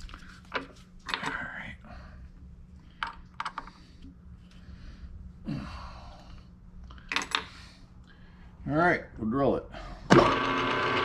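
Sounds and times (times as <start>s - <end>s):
breathy sigh: 5.4s - 6.3s
milling machine humming: 10.1s - 11.0s.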